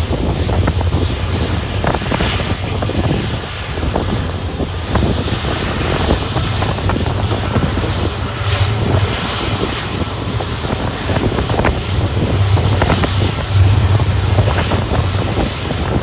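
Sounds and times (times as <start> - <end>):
diesel locomotive engine humming: 0.0 - 16.0
rushing wind: 0.0 - 16.0
train clicks and knocks on track: 0.0 - 16.0.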